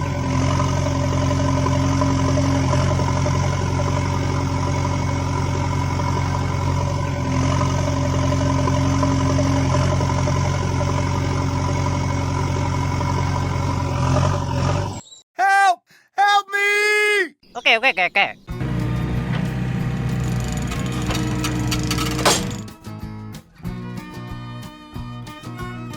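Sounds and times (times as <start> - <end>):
tractor engine running: 0.0 - 15.0, 18.5 - 23.9.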